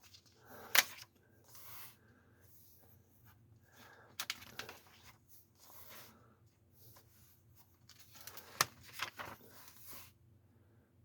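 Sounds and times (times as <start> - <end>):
paper pages rustling: 4.2 - 6.1, 6.8 - 10.2.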